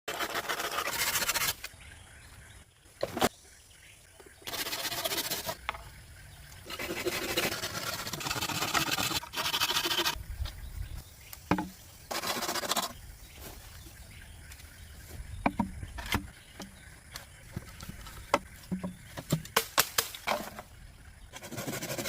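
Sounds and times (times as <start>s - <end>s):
bamboo rasping: 0.1s - 1.7s, 4.4s - 5.8s, 6.6s - 10.2s, 11.5s - 13.0s, 21.3s - 22.0s
bamboo knocking and clicking: 11.3s - 11.8s, 15.4s - 20.6s.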